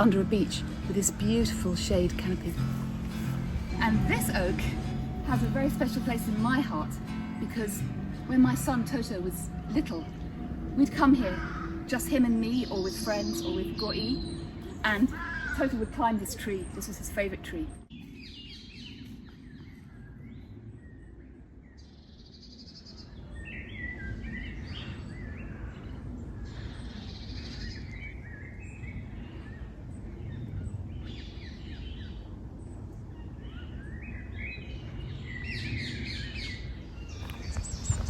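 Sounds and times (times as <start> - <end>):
low steady rumble: 0.0 - 15.1
songbirds singing: 0.0 - 38.0.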